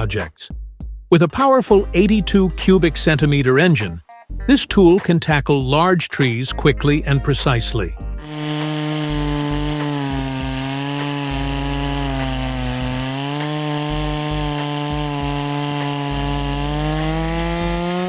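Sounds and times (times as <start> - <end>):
chainsaw cutting wood: 8.2 - 18.0.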